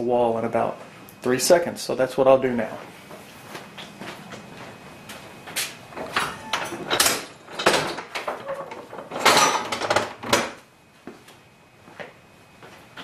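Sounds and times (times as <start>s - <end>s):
folding workbench knocking and clattering: 6.0s - 10.6s.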